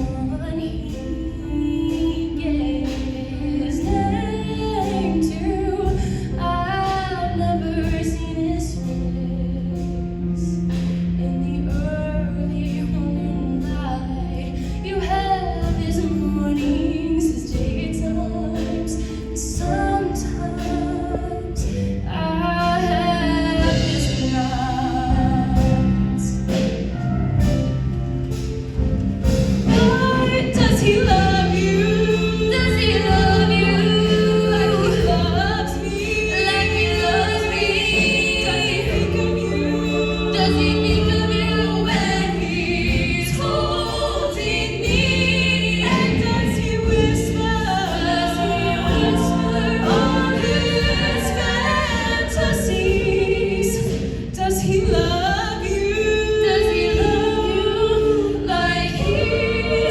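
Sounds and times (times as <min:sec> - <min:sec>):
held bass notes: 0:00.0 - 0:59.9
steady drum beat: 0:02.8 - 0:09.0, 0:22.6 - 0:59.9
choir singing: 0:29.3 - 0:59.9.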